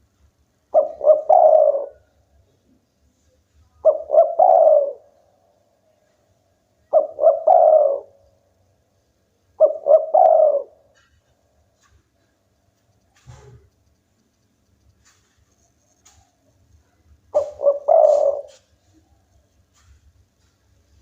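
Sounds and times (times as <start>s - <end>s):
dove cooing: 0.7s - 2.8s, 3.7s - 5.4s, 6.8s - 8.2s, 9.6s - 12.3s, 16.8s - 19.9s.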